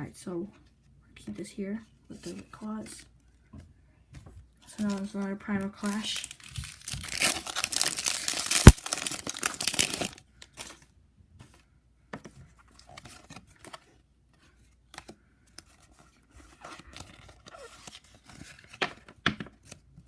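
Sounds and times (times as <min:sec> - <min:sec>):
foil wrapper tearing and crinkling: 0:04.8 - 0:10.2.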